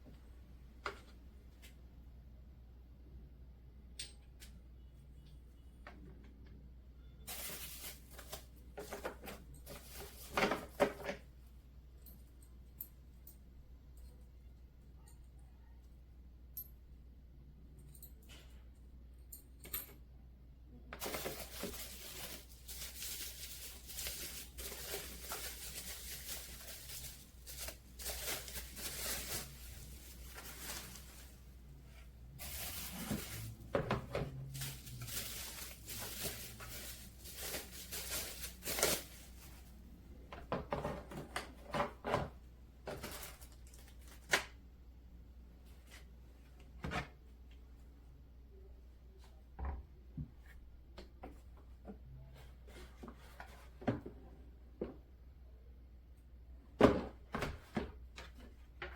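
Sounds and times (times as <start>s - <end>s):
rustling and crinkling: 7.2s - 11.3s, 20.9s - 44.4s.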